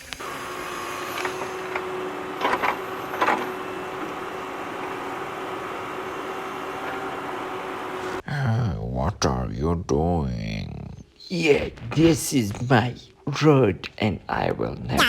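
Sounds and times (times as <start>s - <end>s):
toy electric motor whirring: 0.0s - 1.8s.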